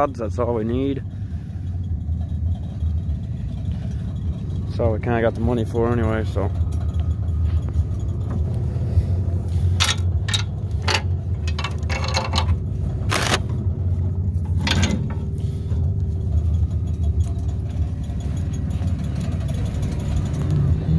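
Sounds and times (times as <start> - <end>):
truck engine idling: 0.0 - 20.9
handling clicks and scrapes: 5.4 - 20.9.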